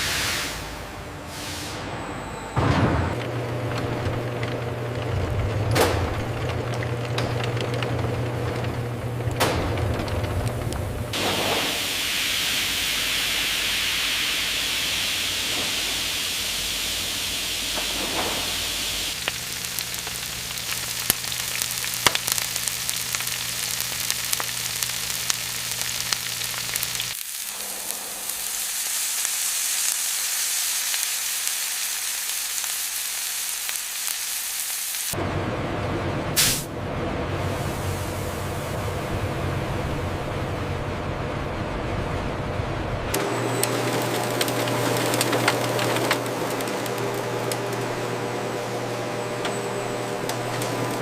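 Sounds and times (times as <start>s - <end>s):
sizzle-like hiss: 0.0s - 1.8s, 11.2s - 35.2s, 36.4s - 36.7s
low machine hum: 0.6s - 28.6s, 35.2s - 51.0s.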